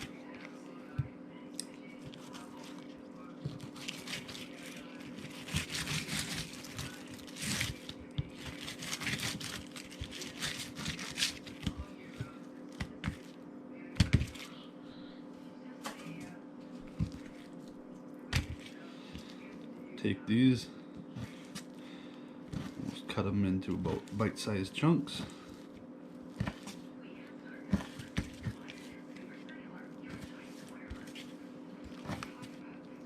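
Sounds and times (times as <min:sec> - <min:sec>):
rustling and handling noises: 0:00.0 - 0:14.7, 0:15.4 - 0:33.0
steady low hum: 0:00.0 - 0:33.0
knife scraping and slicing fish: 0:05.2 - 0:07.8.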